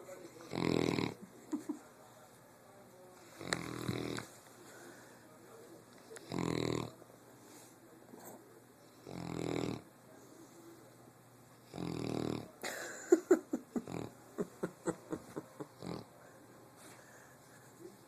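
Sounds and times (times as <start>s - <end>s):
dog snoring: 0.4s - 1.2s, 3.4s - 4.3s, 6.2s - 7.0s, 8.9s - 9.9s, 11.6s - 12.6s, 13.8s - 14.1s, 15.7s - 16.1s.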